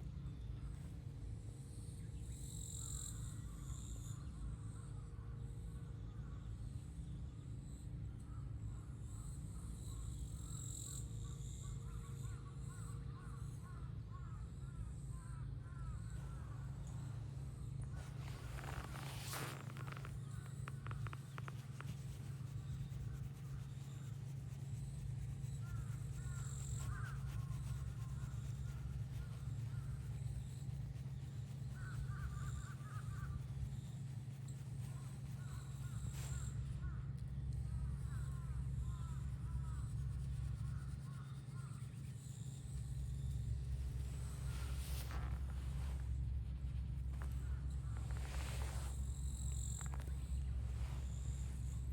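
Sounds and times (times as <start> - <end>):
steady low rumble: 13.8 - 51.9.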